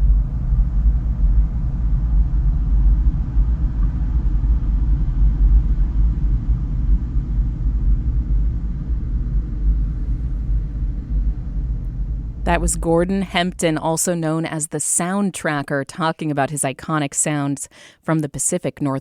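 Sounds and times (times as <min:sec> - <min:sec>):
deep resonating rumble in log: 0:00.0 - 0:13.8.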